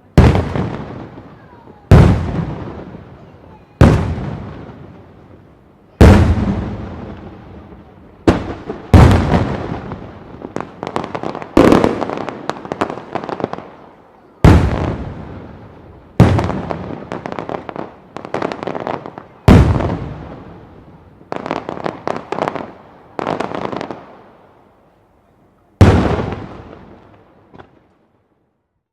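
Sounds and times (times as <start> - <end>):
fireworks deep booms: 0.0 - 13.7, 14.4 - 24.2, 25.8 - 27.9
fireworks crackling: 0.0 - 24.7, 25.8 - 28.1.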